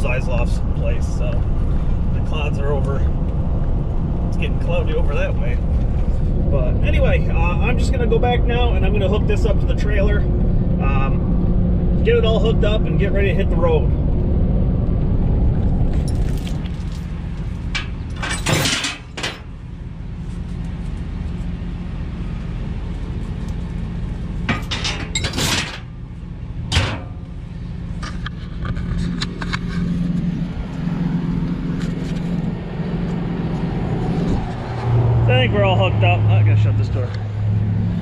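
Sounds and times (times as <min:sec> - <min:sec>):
metal hitch clanks and rattles: 0:15.9 - 0:19.6, 0:24.4 - 0:26.0, 0:26.7 - 0:27.3
diesel pickup idling: 0:25.8 - 0:38.0.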